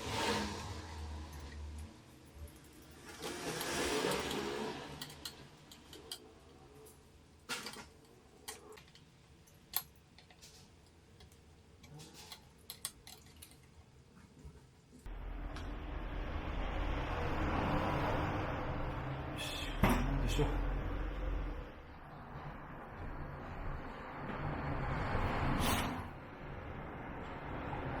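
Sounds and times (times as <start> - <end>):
rustling or scraping: 2.8 - 8.8.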